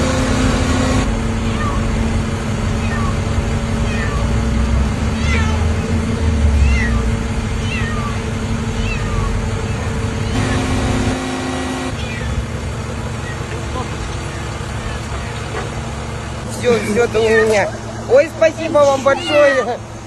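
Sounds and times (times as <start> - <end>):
vehicle engine running: 0.0 - 20.0
cat meowing: 1.4 - 2.0, 2.7 - 4.4, 5.1 - 10.5, 11.9 - 12.5, 14.2 - 15.4, 19.0 - 19.8.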